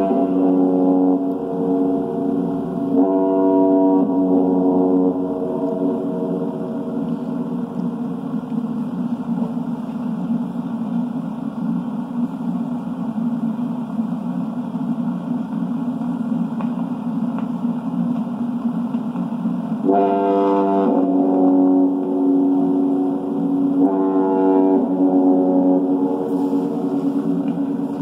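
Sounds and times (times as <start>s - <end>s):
foghorn blast: 0.0s - 8.8s, 19.8s - 28.0s
steady low rumble: 0.0s - 28.0s.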